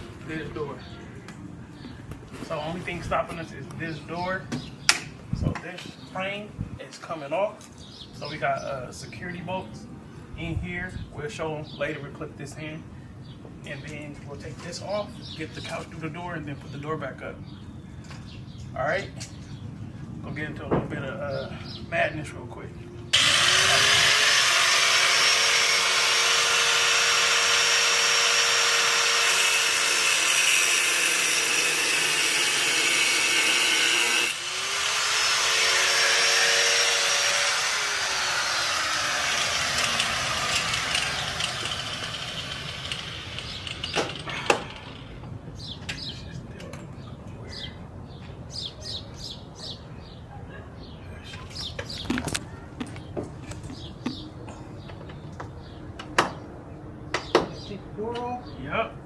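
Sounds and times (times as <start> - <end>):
angle grinder cutting metal: 23.2 - 45.1.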